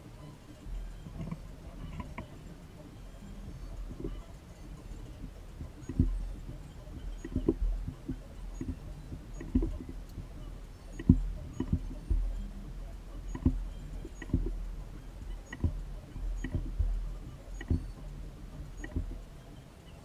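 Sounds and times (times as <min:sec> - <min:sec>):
steady low hum: 0:00.0 - 0:20.0
dull knocks and taps: 0:00.7 - 0:19.4.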